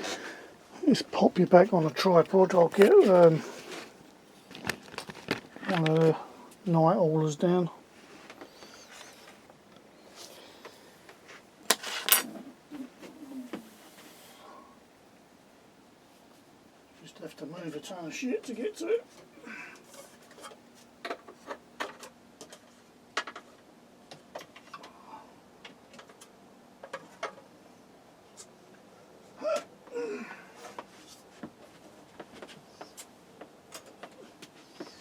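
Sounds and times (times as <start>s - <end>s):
items clicking and knocking: 4.5s - 6.2s
person grunting: 29.4s - 30.5s.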